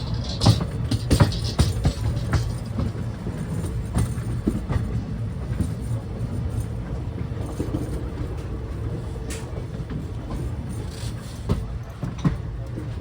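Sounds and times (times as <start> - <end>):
wheels clicking: 0.0 - 4.6
train rumbling on rails: 0.0 - 13.0.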